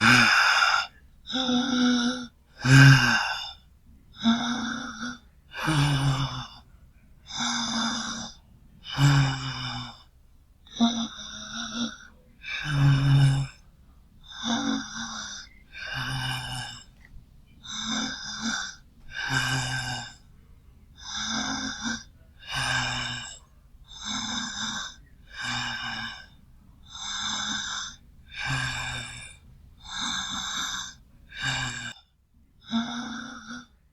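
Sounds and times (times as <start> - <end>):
woman breathing deeply: 0.0 - 6.7.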